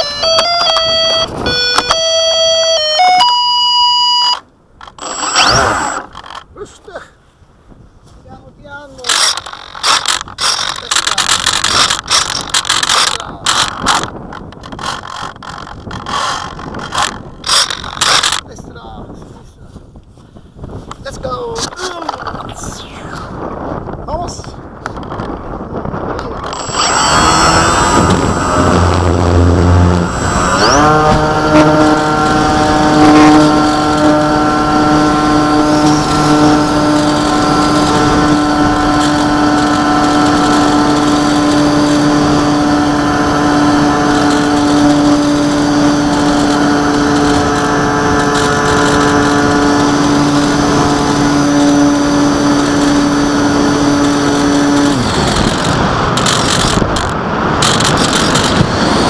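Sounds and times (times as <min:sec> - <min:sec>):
small aircraft motor drone: 0:00.0 - 0:06.4, 0:26.2 - 0:59.0
wind rushing: 0:11.1 - 0:59.0.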